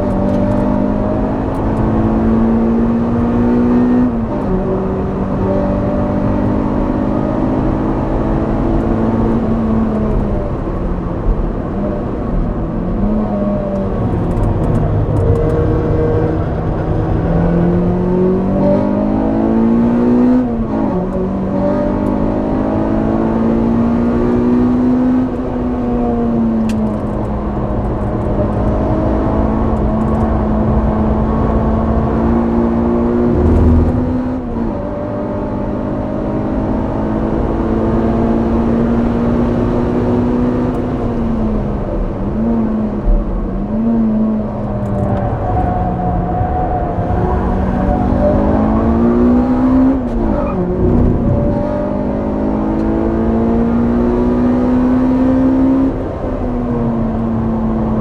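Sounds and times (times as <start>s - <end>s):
car engine revving hard: 14.0s - 27.0s, 27.9s - 40.9s, 47.0s - 58.0s.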